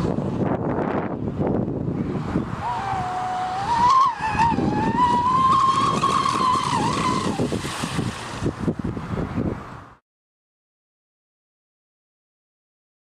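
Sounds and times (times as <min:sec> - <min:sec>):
wind rumble on microphone: 0:00.0 - 0:10.0
model boat motor whining: 0:02.4 - 0:07.6.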